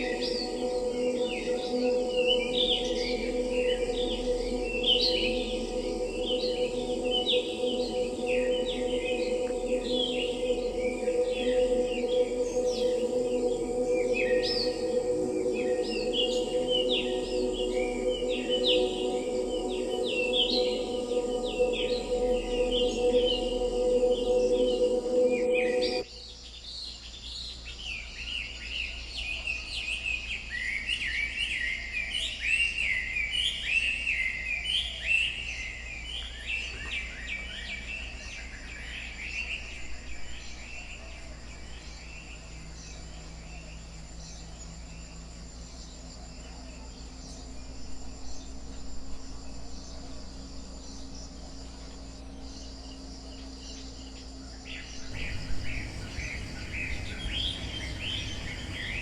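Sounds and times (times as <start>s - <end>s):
low rumble: 0.0s - 26.1s, 55.0s - 59.0s
insect drone: 0.0s - 59.0s
songbirds chirping: 0.0s - 59.0s.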